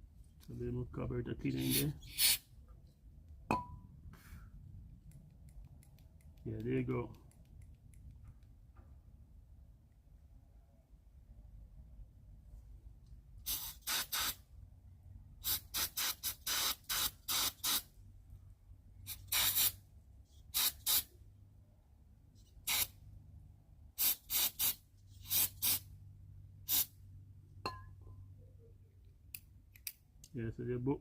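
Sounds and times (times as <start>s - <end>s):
hissing spray bursts: 1.6s - 2.4s, 13.4s - 14.4s, 15.4s - 17.9s, 19.1s - 19.8s, 20.5s - 21.1s, 22.6s - 23.0s, 24.0s - 25.9s, 26.7s - 26.9s.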